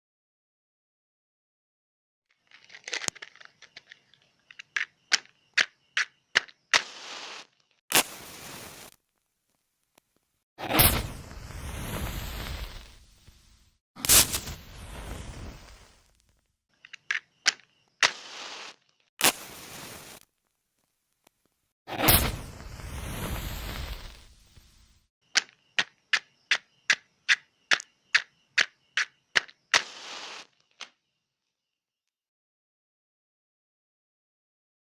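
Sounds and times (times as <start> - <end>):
matchbox rattles and clicks: 2.3 - 5.7
match scraping on striking strip: 6.4 - 9.0, 18.0 - 20.3, 29.0 - 30.6
match flaring with hiss: 6.8 - 9.0, 10.6 - 16.2, 18.0 - 20.3, 21.9 - 25.0, 29.7 - 30.6.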